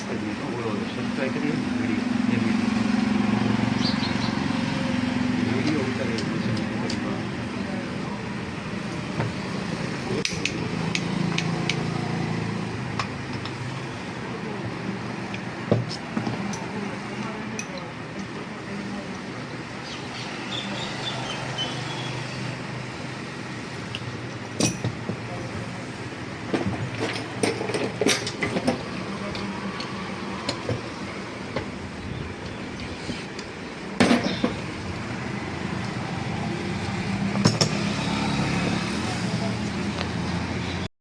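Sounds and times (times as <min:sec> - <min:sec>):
hard parts clicking and clinking: 0:12.9 - 0:13.7, 0:23.9 - 0:25.7, 0:26.5 - 0:31.8, 0:32.4 - 0:34.7, 0:37.3 - 0:37.8.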